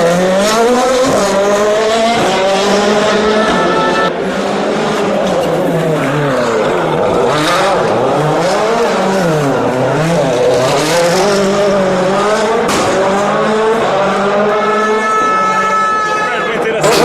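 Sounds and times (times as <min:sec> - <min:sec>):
rally car engine revving: 0:00.0 - 0:17.0
sharp bang: 0:02.0 - 0:04.2.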